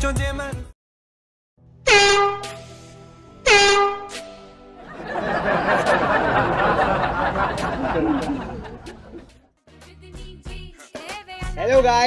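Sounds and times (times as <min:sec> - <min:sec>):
air horn blasts: 0:01.8 - 0:02.6, 0:03.4 - 0:04.2.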